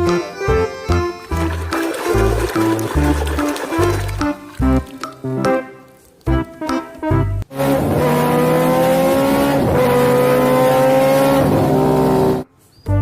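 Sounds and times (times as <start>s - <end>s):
children's music: 0.0s - 7.4s
race car engine revving: 7.4s - 12.4s.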